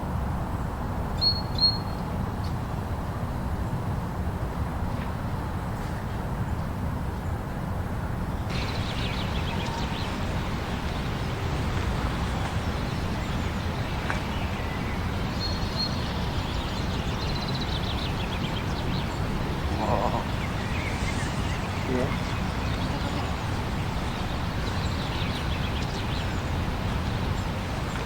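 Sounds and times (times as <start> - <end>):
blizzard wind rumble: 8.4 - 28.0.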